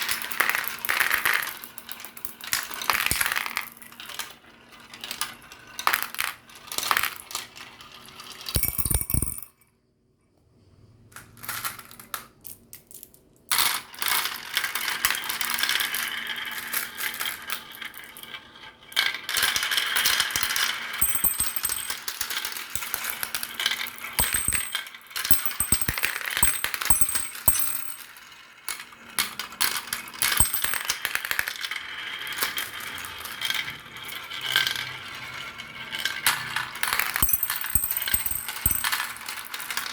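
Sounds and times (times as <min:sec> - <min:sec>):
marbles clattering down track: 0:00.0 - 0:09.5, 0:13.5 - 0:39.9.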